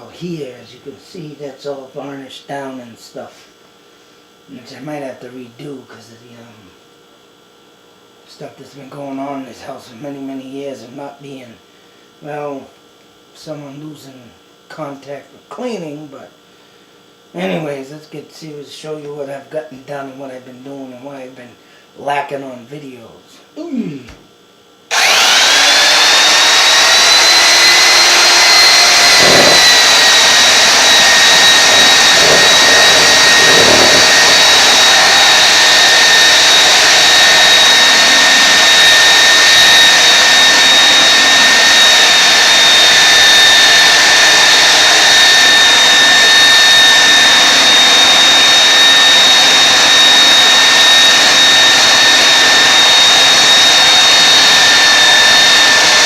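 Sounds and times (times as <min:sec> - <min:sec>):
floor sander motor whine: 0:24.9 - 0:56.0.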